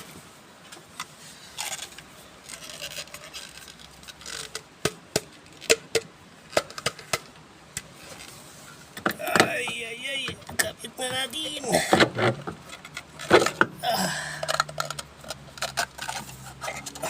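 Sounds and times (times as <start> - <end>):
rubbing and scraping: 14.4 - 17.0.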